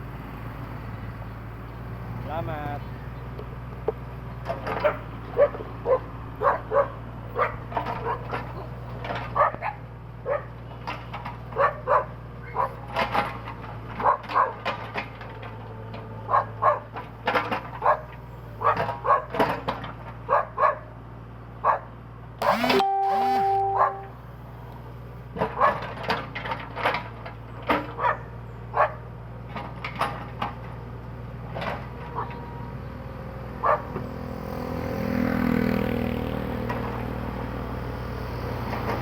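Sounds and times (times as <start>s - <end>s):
dog barking: 4.8s - 8.4s, 9.4s - 10.5s, 11.6s - 12.8s, 14.0s - 14.6s, 16.3s - 16.9s, 17.8s - 19.4s, 20.3s - 20.9s, 21.6s - 21.9s, 23.8s - 24.1s, 25.5s - 25.8s, 28.0s - 29.0s, 33.6s - 34.0s.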